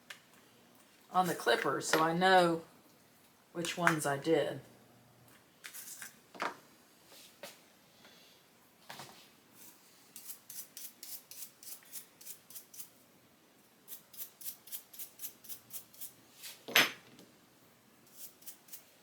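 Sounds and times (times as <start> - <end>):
brush scrubbing metal blade: 13.9 - 16.1, 18.1 - 19.0.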